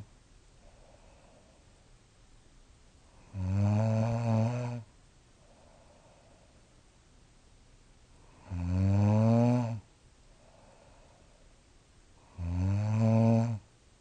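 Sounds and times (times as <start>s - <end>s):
woman snoring: 3.2s - 4.9s, 8.3s - 9.9s, 12.2s - 13.6s.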